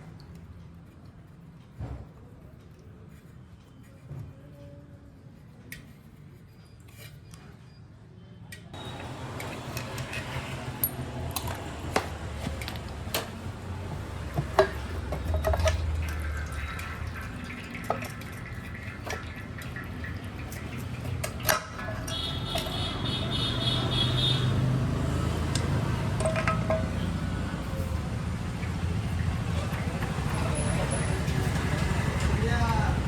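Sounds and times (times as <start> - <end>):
metal tools clinking: 8.8 - 13.3.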